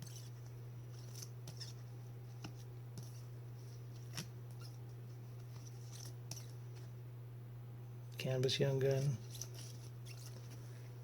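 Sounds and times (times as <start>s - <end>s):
steady low hum: 0.0s - 11.0s
cards rustling and clicking: 9.0s - 10.6s.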